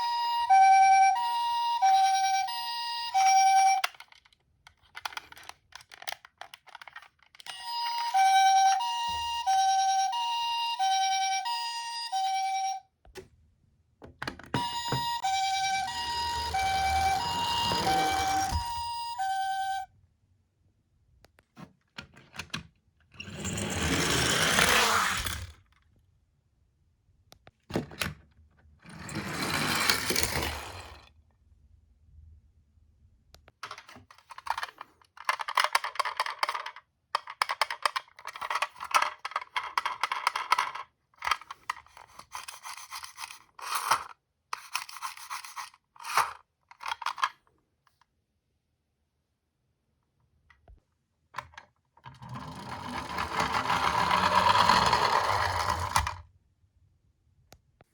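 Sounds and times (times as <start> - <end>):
toy cars clattering together: 3.2 - 9.2, 23.2 - 25.6, 28.9 - 31.0, 33.6 - 47.4, 51.4 - 56.2
toy cars rolling down a slope: 14.6 - 19.8, 23.2 - 25.7, 28.9 - 31.1, 33.6 - 47.3, 52.0 - 56.2.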